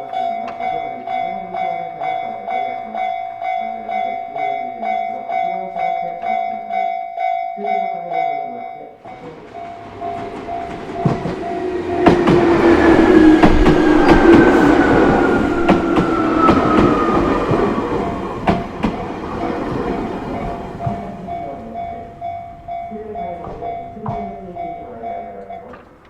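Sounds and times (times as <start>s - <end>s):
crossing warning bell ringing: 0.0s - 26.0s
train rumbling: 9.0s - 26.0s
wheel clacks on rail joints: 9.1s - 26.0s
falling whine: 11.0s - 20.8s.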